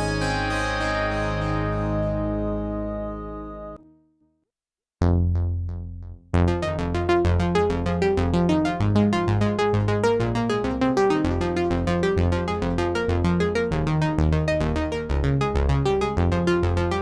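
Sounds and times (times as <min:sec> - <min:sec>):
synthesizer sequenced pattern: 0:00.0 - 0:03.8.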